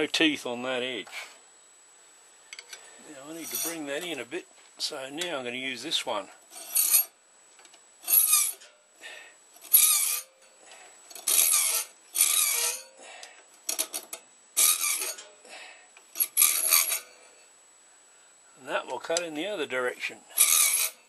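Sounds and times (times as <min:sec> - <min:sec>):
hand file cutting metal: 0:03.3 - 0:03.9, 0:06.6 - 0:07.1, 0:08.1 - 0:08.7, 0:09.6 - 0:10.3, 0:11.2 - 0:13.0, 0:14.6 - 0:15.3, 0:16.2 - 0:17.2, 0:20.4 - 0:21.0.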